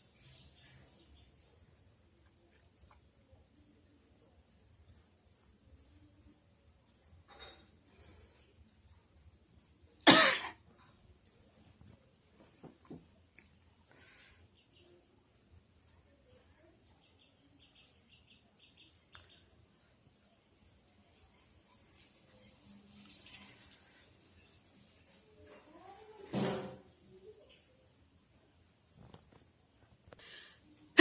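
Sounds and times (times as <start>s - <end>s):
crickets chirping: 0.2s - 31.0s
person sneezing: 10.0s - 10.6s.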